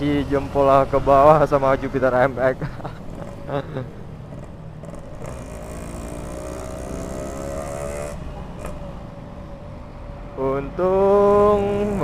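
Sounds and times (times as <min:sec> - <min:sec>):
road and wind rumble: 0:00.0 - 0:12.0
motorcycle engine accelerating: 0:03.1 - 0:03.6, 0:04.2 - 0:09.0.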